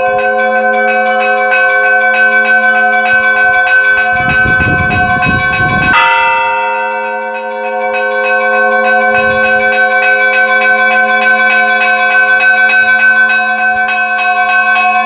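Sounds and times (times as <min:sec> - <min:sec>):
large church bells ringing: 0:00.0 - 0:15.0
small church bells ringing: 0:00.0 - 0:15.0
bright bell strike: 0:03.8 - 0:08.3, 0:09.0 - 0:10.8.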